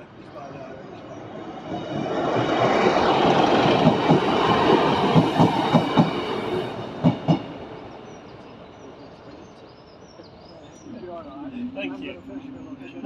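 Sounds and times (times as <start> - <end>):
train rumble: 0.1 - 9.7
train wheels clicking over rail joints: 2.4 - 7.6.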